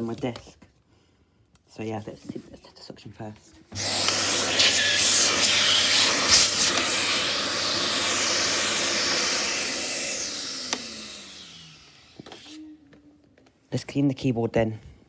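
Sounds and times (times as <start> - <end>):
vacuum cleaner running: 3.7 - 12.7
vacuum motor whining down: 3.7 - 12.8.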